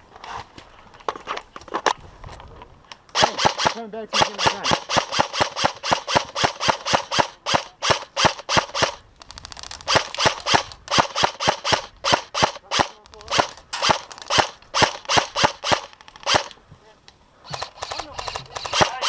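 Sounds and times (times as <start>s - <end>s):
airsoft gun rapid firing: 3.1s - 16.6s, 17.5s - 19.0s.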